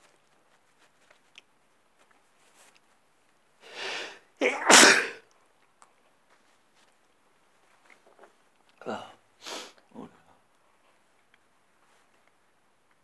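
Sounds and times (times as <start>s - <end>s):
man breathing in: 3.6s - 4.2s
man sneezing: 3.8s - 5.2s.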